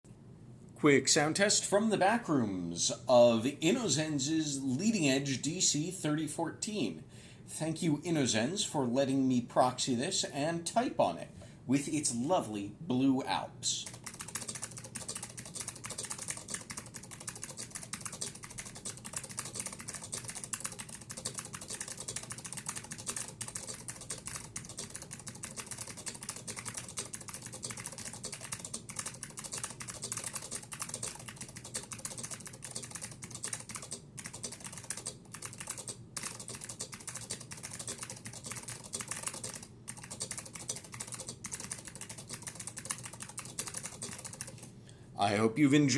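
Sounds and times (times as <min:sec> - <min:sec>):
clicky keyboard typing: 0:13.8 - 0:44.7.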